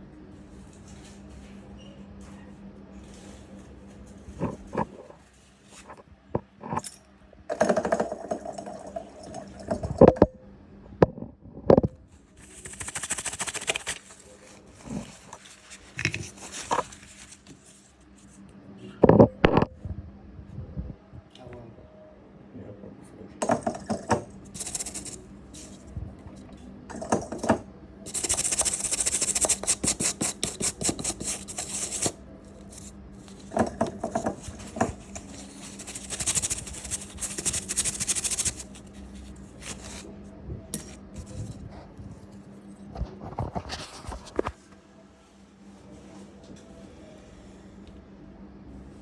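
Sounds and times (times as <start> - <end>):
faint steady hum: 0.0 - 49.0
rapid scratching strokes: 12.4 - 14.2, 24.5 - 25.8, 28.1 - 32.9, 34.3 - 40.1
metal tools clicking and scraping: 23.4 - 38.9, 40.8 - 41.6.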